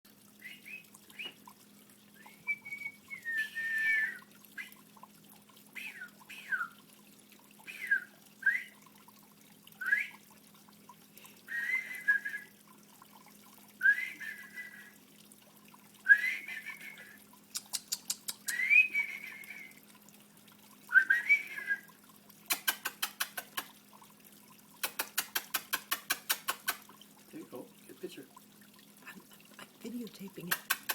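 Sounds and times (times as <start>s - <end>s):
water bird whistled calls: 0.4s - 1.5s, 2.1s - 4.9s, 5.7s - 6.9s, 7.6s - 8.8s, 9.8s - 10.3s, 13.8s - 15.0s, 16.0s - 19.9s, 20.9s - 23.6s.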